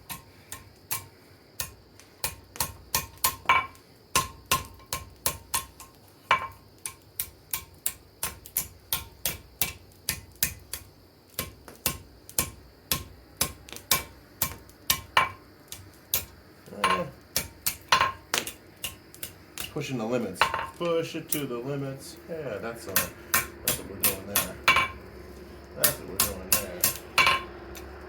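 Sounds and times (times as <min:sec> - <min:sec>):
hammer striking steel on anvil: 0:22.9 - 0:25.0, 0:25.8 - 0:27.9.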